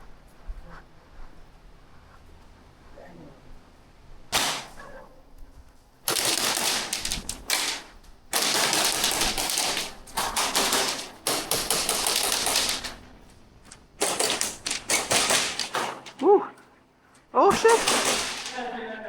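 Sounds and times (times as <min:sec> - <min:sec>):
airsoft guns firing bursts: 0:04.3 - 0:04.8, 0:06.0 - 0:13.1, 0:14.0 - 0:16.2, 0:17.5 - 0:18.8.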